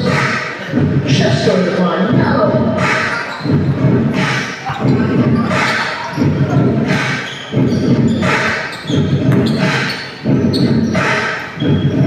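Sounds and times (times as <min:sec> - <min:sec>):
basketball bouncing on gym floor: 0:07.2 - 0:12.0.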